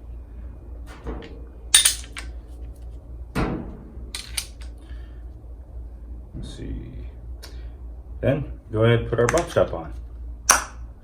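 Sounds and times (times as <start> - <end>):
metal parts clinking: 0.9 - 2.5, 4.2 - 4.7.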